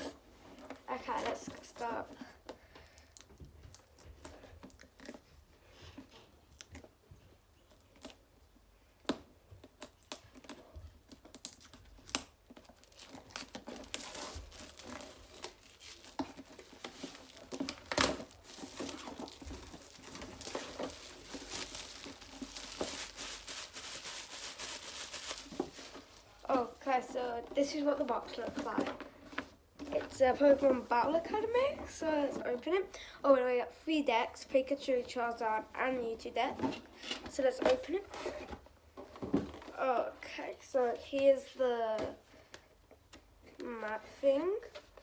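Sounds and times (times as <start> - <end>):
packaging crinkling and tearing: 9.6 - 26.6.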